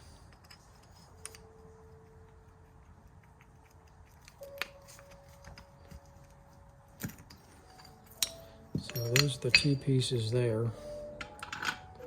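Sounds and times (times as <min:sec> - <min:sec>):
faint steady hum: 0:00.0 - 0:12.0
metal machine parts clicking: 0:07.0 - 0:09.8.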